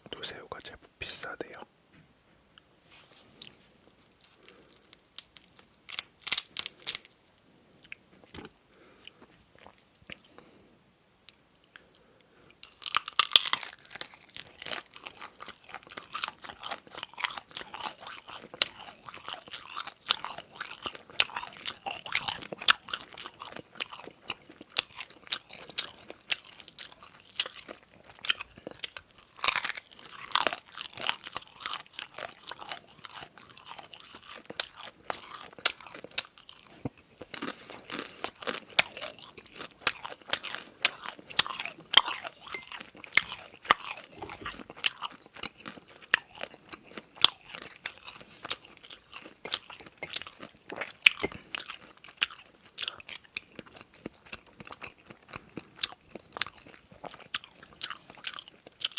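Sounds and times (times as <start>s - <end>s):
crunchy bites: 4.3s - 7.2s, 12.6s - 58.9s
wet chewing: 12.6s - 58.9s.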